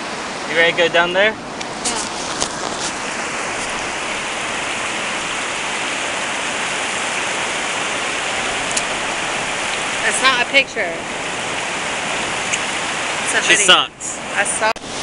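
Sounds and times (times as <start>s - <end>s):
rushing water hiss: 0.0s - 15.0s.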